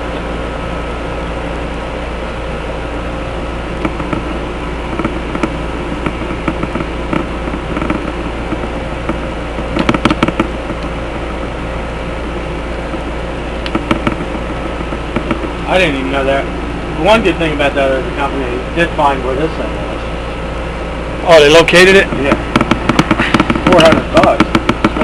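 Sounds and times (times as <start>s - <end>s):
steady low hum: 0.0s - 25.0s
camera cable clicking and knocking: 3.8s - 10.9s, 13.7s - 15.5s, 22.3s - 25.0s.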